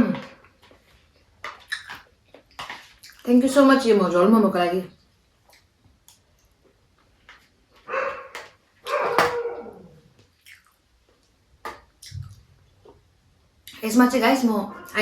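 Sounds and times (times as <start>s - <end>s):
dogs barking: 7.8s - 10.0s.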